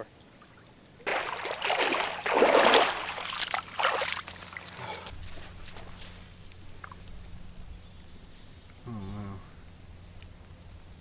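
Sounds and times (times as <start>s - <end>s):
water splashing and sloshing: 0.4s - 7.4s.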